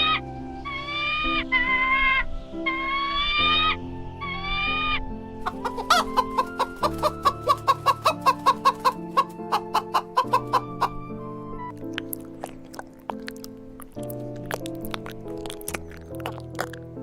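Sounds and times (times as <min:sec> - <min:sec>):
background music: 0:00.0 - 0:17.0
chicken clucking: 0:05.4 - 0:11.0.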